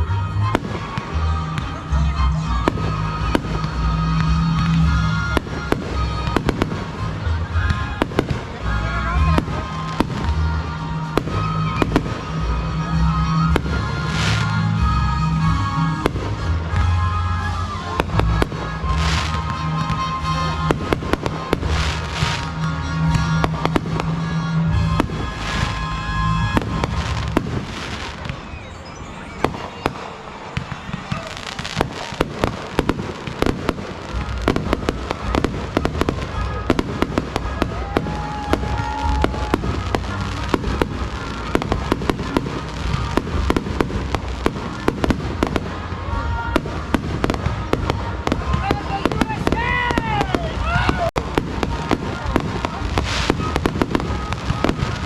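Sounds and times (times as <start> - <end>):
music with heavy bass: 0.0 - 28.2
fireworks cracks and bangs: 0.0 - 55.0.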